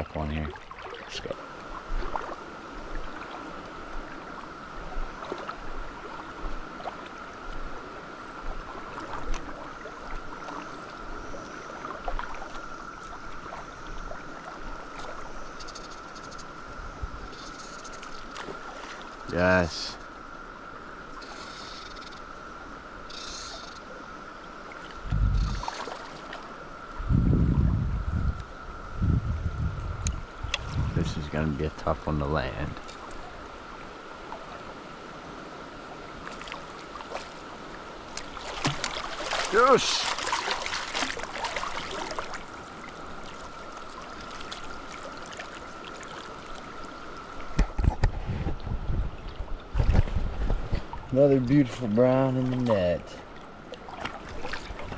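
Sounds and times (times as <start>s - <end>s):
water splashing: 0.0s - 7.2s, 8.5s - 15.5s, 18.0s - 19.4s, 24.6s - 26.6s, 36.2s - 48.0s, 50.8s - 54.9s
cicada chorus drone: 0.0s - 48.0s
stream water running: 0.0s - 54.9s
low rumbles on microphone: 25.0s - 25.6s, 27.0s - 31.4s, 47.6s - 51.0s.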